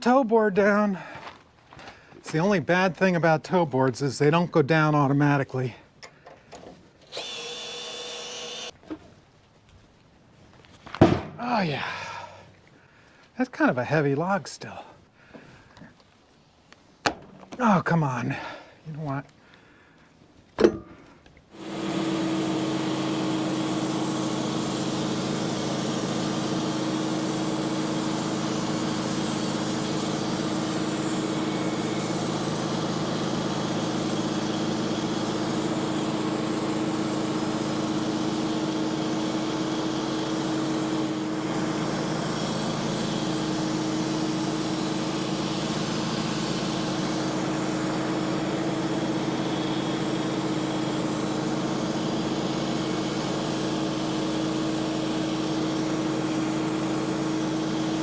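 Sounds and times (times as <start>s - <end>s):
band sawmill cutting a log: 7.0s - 8.8s, 21.5s - 58.0s.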